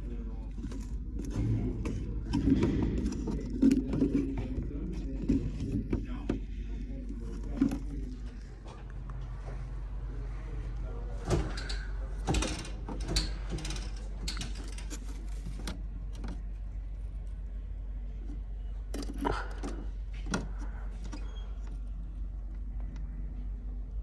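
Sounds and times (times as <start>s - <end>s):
steady low hum: 0.0s - 24.0s
metallic clicks and rattles: 11.3s - 16.4s.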